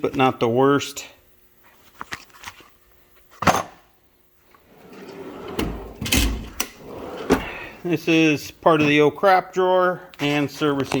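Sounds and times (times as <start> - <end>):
drawer sliding out: 4.6 - 7.8
metal drawer shutting: 4.7 - 7.8.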